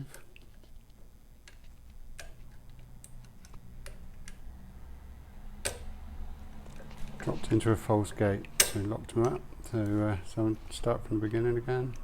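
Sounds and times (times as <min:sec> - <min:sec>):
lock picking metallic clicks: 0:08.4 - 0:09.4.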